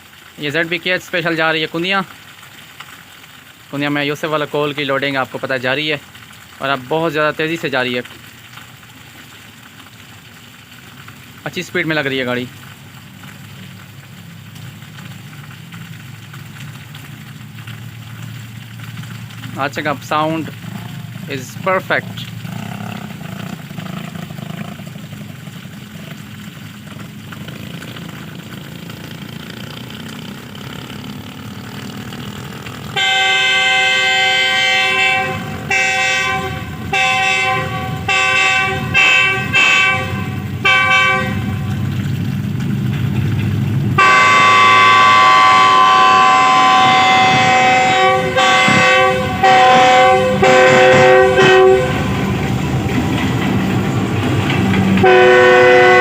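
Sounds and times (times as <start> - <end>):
locomotive air horn blasts: 32.9 - 42.0, 44.0 - 52.6, 55.0 - 56.0.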